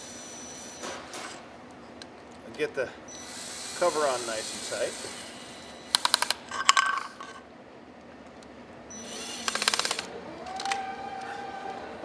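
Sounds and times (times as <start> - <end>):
screwdriver metallic clicks: 9.4 - 10.7.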